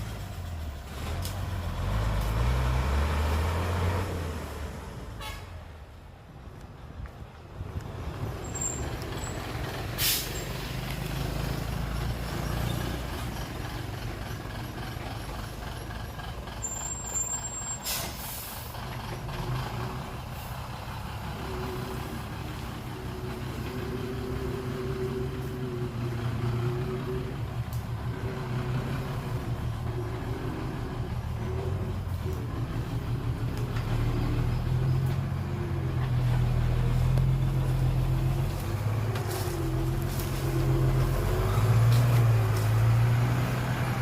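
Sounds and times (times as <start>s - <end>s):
diesel engine running: 7.0s - 44.0s
air brakes hissing: 8.6s - 10.6s, 16.6s - 18.8s.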